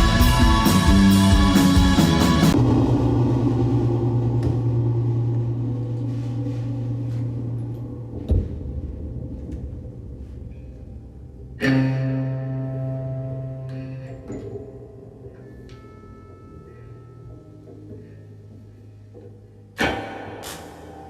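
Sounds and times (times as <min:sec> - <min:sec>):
sharp knock: 0:19.8 - 0:21.0.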